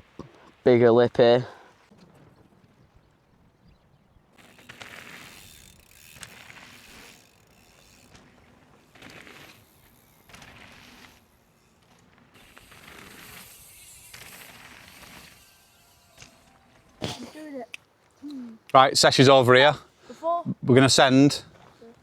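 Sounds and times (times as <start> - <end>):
bike freehub ratchet buzzing: 4.4 - 17.1.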